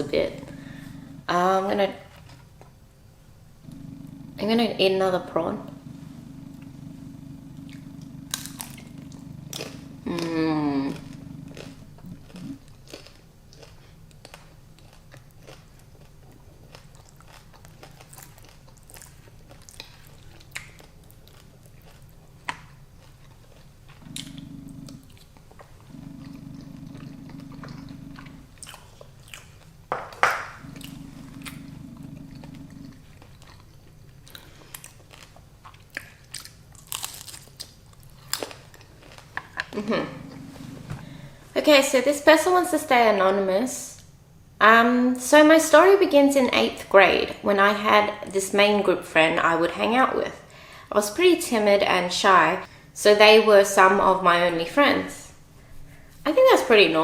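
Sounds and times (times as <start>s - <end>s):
person chewing food: 0.1s - 1.3s, 5.6s - 41.5s.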